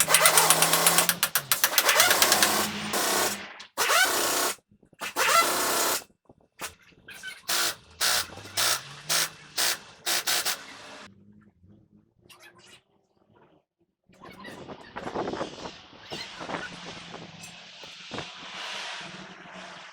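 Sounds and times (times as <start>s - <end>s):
hissing bursts: 0.0s - 4.5s, 7.5s - 11.1s.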